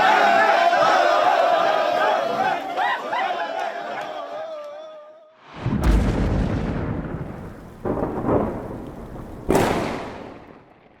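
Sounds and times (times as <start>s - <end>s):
deep rumbling booms: 5.5s - 10.9s.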